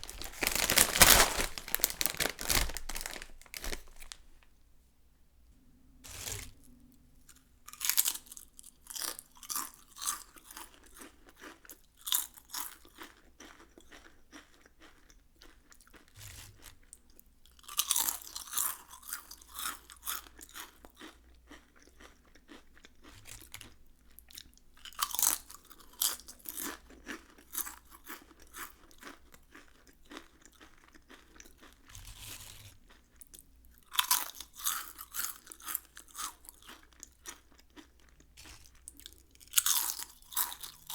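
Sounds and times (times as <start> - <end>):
potato chips crunching: 0.0 - 4.5, 7.7 - 16.7, 17.6 - 23.8, 24.8 - 40.9
soft chewing: 19.1 - 40.9.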